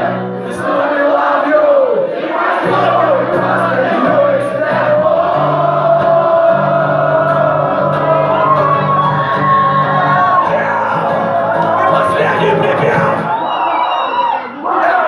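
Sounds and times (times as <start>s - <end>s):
band playing a repeating bass line: 2.6s - 13.4s.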